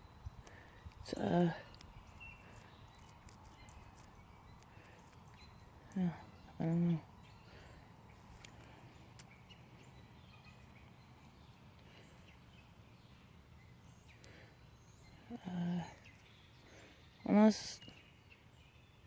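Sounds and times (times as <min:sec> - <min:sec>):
faint bird chirps: 0:00.0 - 0:19.0
small clicks: 0:01.7 - 0:06.0.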